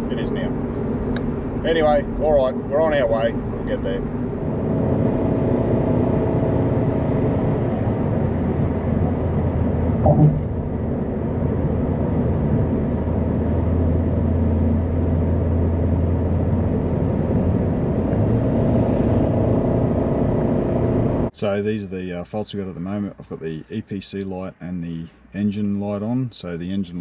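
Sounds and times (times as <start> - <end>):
car engine and road noise: 0.0 - 27.0
knock: 10.0 - 10.5.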